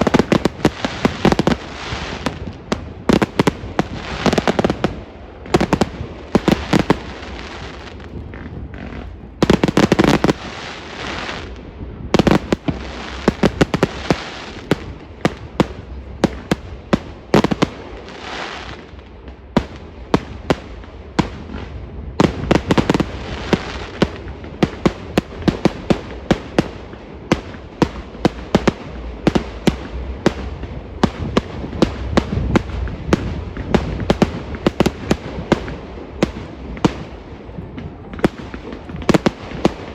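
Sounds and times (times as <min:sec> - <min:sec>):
fireworks bangs: 0:00.0 - 0:39.9
fireworks crackle: 0:00.0 - 0:39.9.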